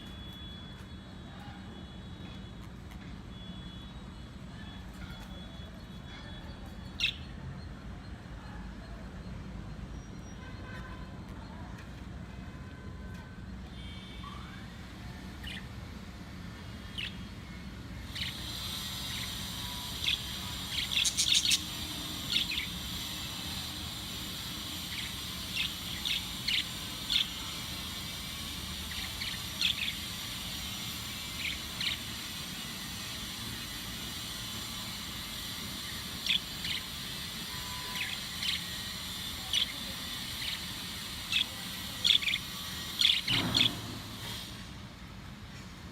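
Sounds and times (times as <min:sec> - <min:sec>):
budgerigars chirping: 0:15.4 - 0:15.8, 0:16.8 - 0:17.4, 0:18.0 - 0:44.3.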